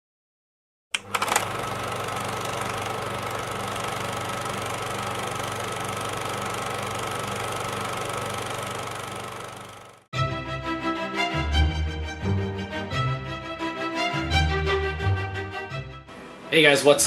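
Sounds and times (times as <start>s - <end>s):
machine clicks: 1.0s - 10.0s
machine humming with hiss: 1.0s - 10.1s.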